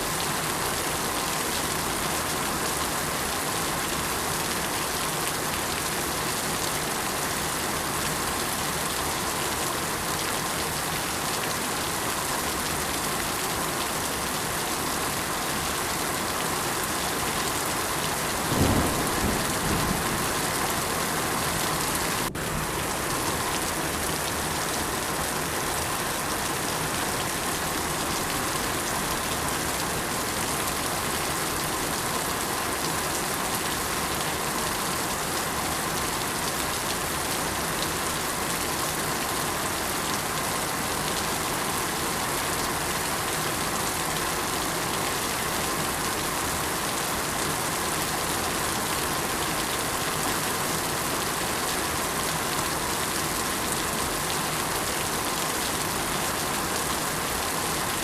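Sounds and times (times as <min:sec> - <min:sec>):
heavy rainfall: 0:00.0 - 0:58.0
low thunder roll: 0:18.5 - 0:20.6.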